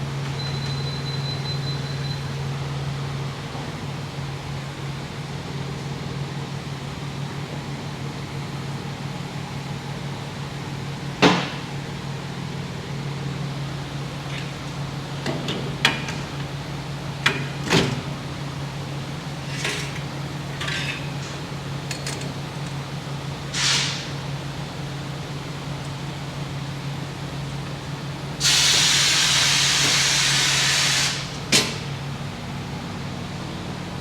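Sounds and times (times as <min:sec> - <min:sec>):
low machine hum: 0:00.0 - 0:34.0
short hissing noises: 0:23.5 - 0:24.2, 0:28.4 - 0:31.4.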